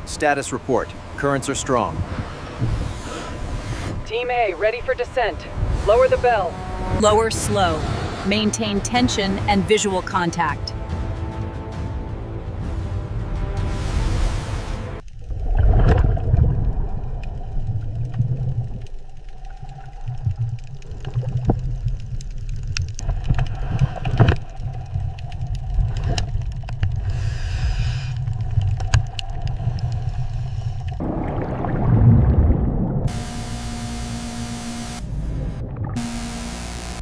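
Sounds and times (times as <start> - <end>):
deep underwater rumble: 13.6 - 36.3.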